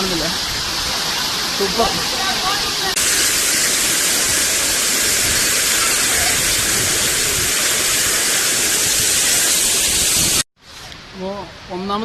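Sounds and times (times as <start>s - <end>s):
waterfall rushing and splashing: 0.0s - 10.4s.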